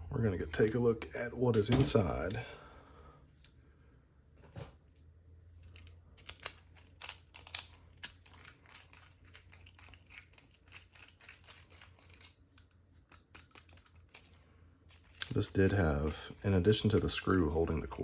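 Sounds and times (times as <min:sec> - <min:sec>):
metallic clicks of padlock handled: 0:05.7 - 0:16.3.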